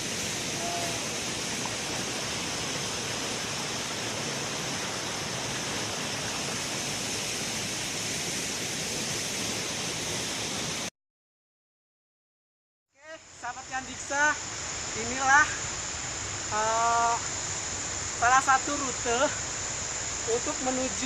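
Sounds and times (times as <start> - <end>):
waterfall rushing: 0.0 - 10.9, 13.4 - 21.0.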